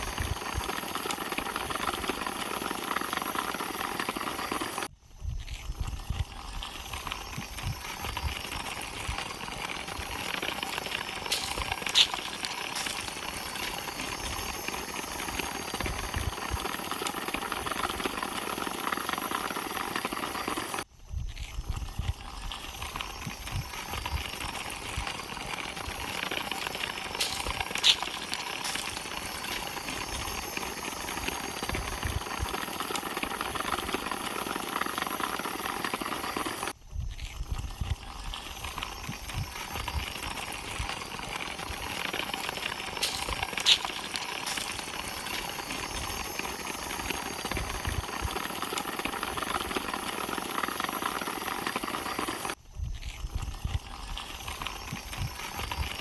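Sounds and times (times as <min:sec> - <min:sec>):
steady hissing ambience: 0:06.3 - 0:20.8, 0:23.6 - 0:36.8, 0:38.1 - 0:52.6.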